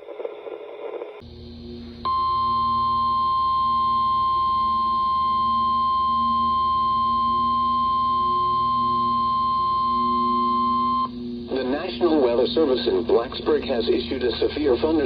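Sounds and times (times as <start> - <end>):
steady high alarm tone: 2.0 - 13.0
faint radio hiss: 11.4 - 15.0.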